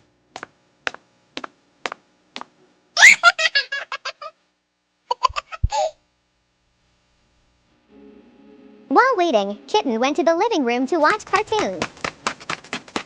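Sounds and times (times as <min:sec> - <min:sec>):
child giggling: 0:03.0 - 0:04.3, 0:05.1 - 0:05.9.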